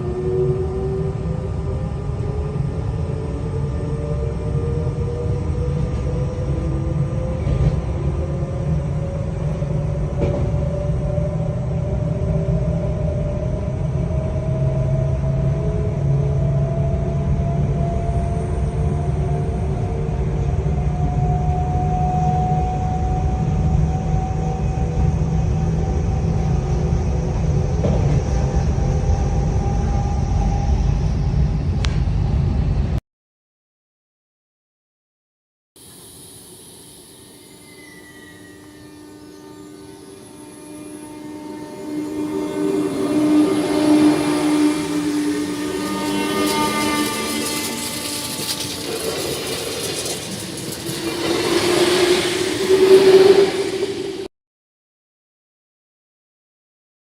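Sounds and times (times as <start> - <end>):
electric train motors whining: 0.0 - 31.8, 35.8 - 54.3
train running rumble: 0.0 - 33.0, 38.6 - 54.3.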